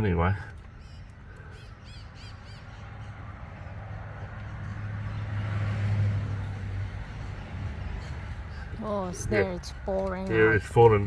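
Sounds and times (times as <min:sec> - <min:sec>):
bird chirping: 0:00.5 - 0:05.5.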